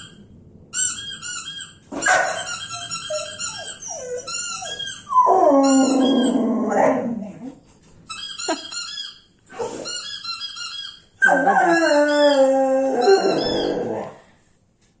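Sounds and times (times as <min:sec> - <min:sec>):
dog squeaky cries and whine: 0:00.0 - 0:07.1, 0:08.1 - 0:14.2.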